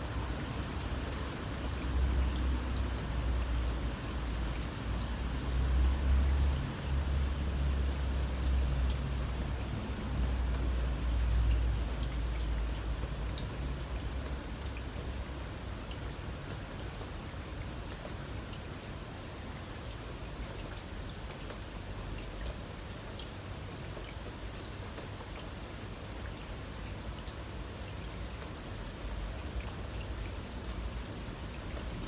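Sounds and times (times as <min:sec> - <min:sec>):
high-pitched insect trill: 0:00.0 - 0:16.4
light rain: 0:00.0 - 0:32.0.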